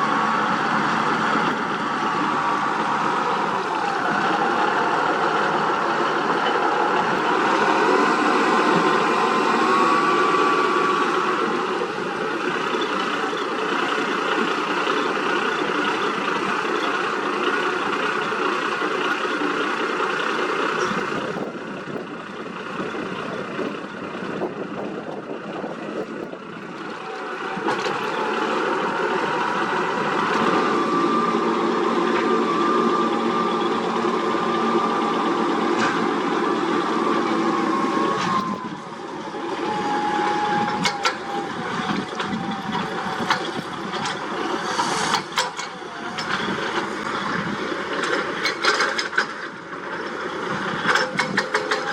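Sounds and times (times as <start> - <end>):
heavy machine diesel engines: 0.0 - 51.9
steady whine: 26.0 - 49.9.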